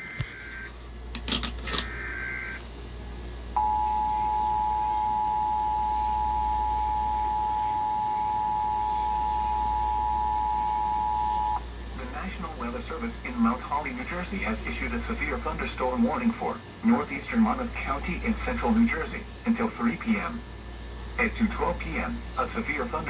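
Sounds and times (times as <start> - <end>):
data tone bursts: 3.6 - 11.6
two-tone attention signal: 3.6 - 11.6.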